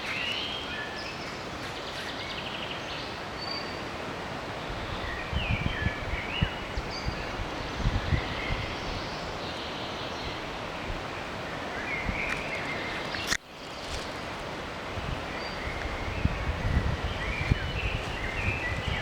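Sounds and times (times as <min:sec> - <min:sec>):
bird calls: 0:00.0 - 0:03.9, 0:11.5 - 0:14.2
wind rustling through trees: 0:00.0 - 0:19.0
wind thumps on microphone: 0:05.0 - 0:09.0, 0:15.0 - 0:19.0.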